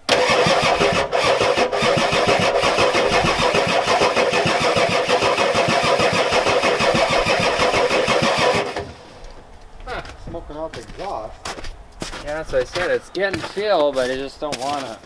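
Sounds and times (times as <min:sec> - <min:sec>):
diesel engine cranking: 0:00.0 - 0:10.1.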